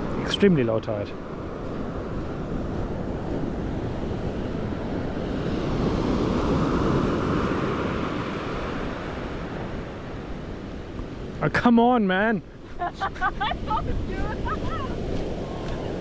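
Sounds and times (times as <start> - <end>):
ocean surf washing on beach: 0.0 - 16.0
wind buffeting microphone: 12.4 - 16.0.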